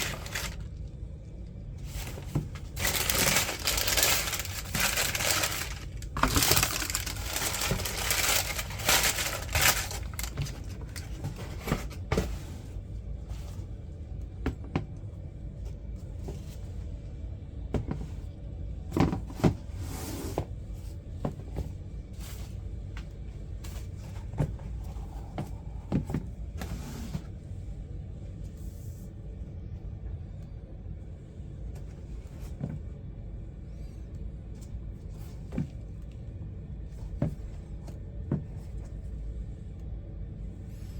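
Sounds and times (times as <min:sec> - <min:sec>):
packaging paper crinkling: 0:00.0 - 0:00.7, 0:02.0 - 0:11.1
steady low hum: 0:00.0 - 0:40.9.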